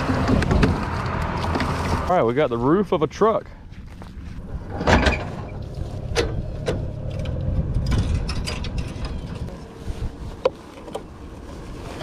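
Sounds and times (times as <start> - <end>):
low rumble: 4.0 - 10.4.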